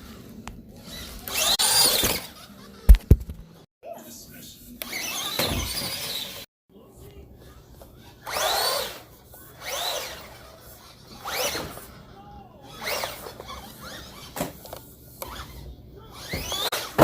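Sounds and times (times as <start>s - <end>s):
toy truck electric motor whining: 0.8s - 2.8s, 4.8s - 6.5s, 8.0s - 12.0s, 12.6s - 17.0s.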